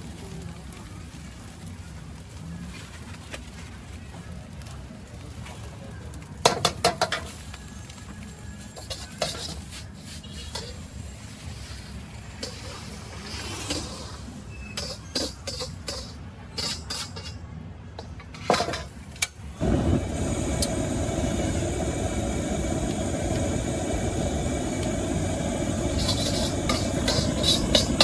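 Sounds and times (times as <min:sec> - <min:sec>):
metal spatula scraping a wok: 0:08.6 - 0:17.4, 0:25.9 - 0:28.0
steady low rumble: 0:19.6 - 0:28.0.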